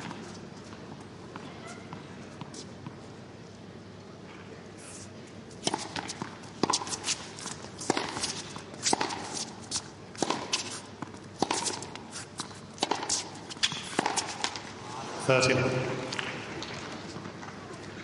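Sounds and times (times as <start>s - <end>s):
tennis ball struck by rackets: 5.6s - 7.2s, 7.8s - 9.5s, 10.2s - 12.0s, 12.8s - 14.8s.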